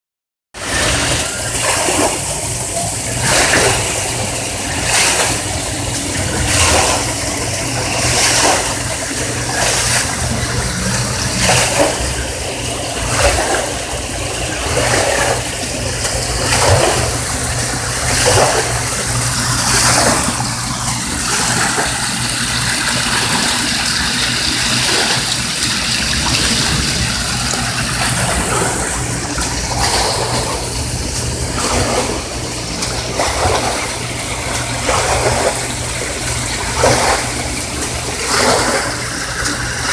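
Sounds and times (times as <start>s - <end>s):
floodwater rushing and splashing: 0.6s - 39.9s
steady low hum: 0.9s - 39.9s.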